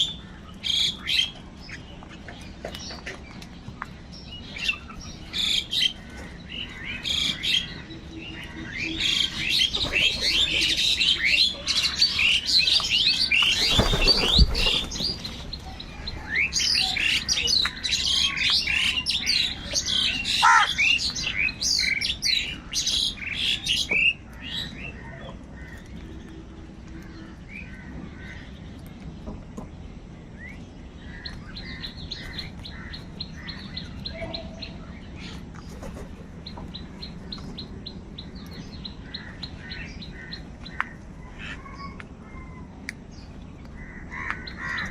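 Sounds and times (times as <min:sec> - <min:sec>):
flock of birds chirping: 0:00.0 - 0:44.9.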